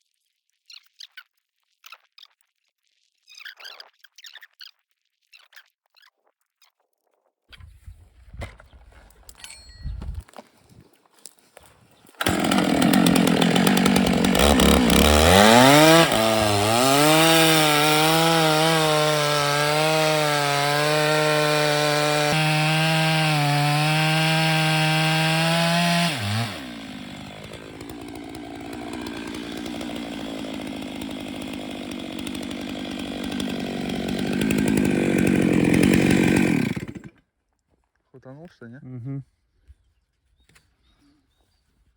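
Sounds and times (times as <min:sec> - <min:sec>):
chainsaw revving: 0:12.2 - 0:37.2.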